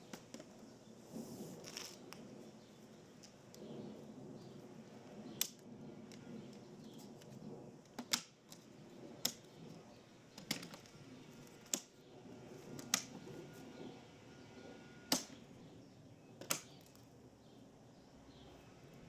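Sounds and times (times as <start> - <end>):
sharp clicks: 12.8 - 13.2, 16.4 - 17.1.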